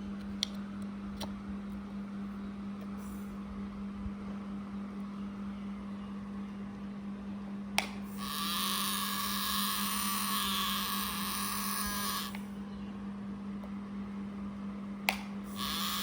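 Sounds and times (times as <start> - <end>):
steady low hum: 0.0 - 16.0
switch click: 7.8 - 8.0, 15.1 - 15.3
small motor whining: 8.1 - 12.5, 15.5 - 16.0.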